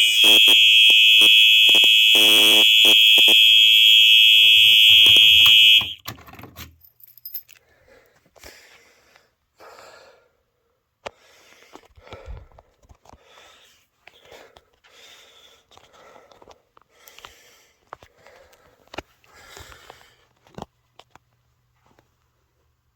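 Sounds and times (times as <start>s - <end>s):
fire alarm horn high tone: 0.0s - 6.1s.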